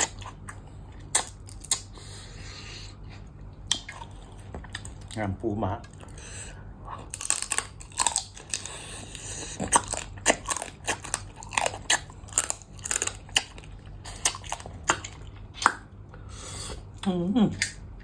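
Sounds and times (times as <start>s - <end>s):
person chewing crunchy food: 0.0s - 5.2s, 5.8s - 17.7s.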